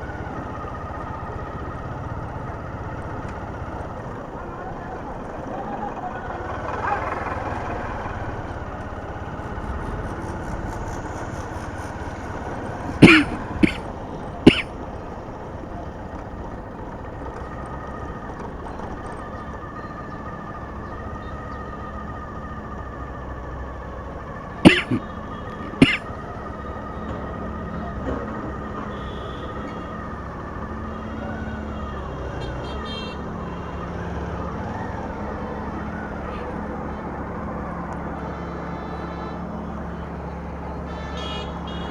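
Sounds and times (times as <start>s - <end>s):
traffic noise: 0.0s - 41.9s
loud short sharp sounds: 13.0s - 13.8s, 24.6s - 25.0s, 25.8s - 26.0s.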